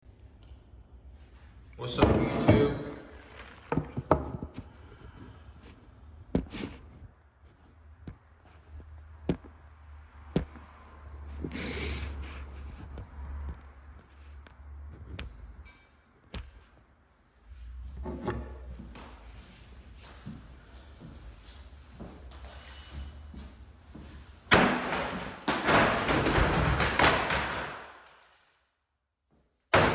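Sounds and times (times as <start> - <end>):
sharp knocks and taps: 8.8 - 9.6.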